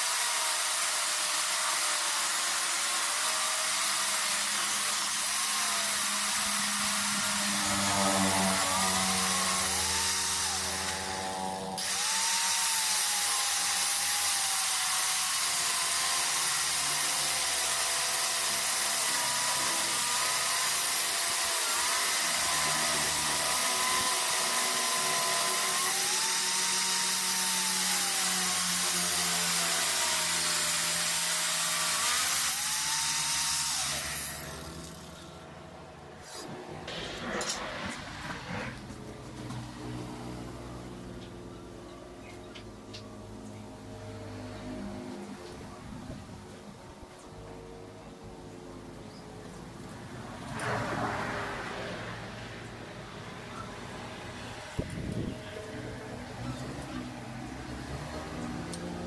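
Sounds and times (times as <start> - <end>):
power tool running on metal: 0.0 - 35.6.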